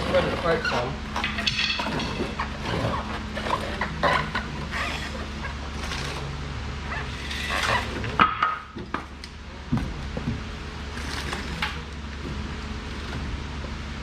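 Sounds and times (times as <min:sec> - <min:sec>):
metal knocks and clanks: 0:00.0 - 0:04.5
steady low hum: 0:00.0 - 0:14.0.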